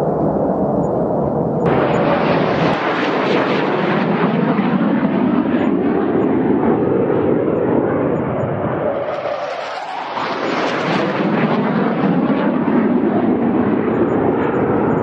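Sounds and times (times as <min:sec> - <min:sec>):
fighter jet flying past: 0:00.0 - 0:15.0.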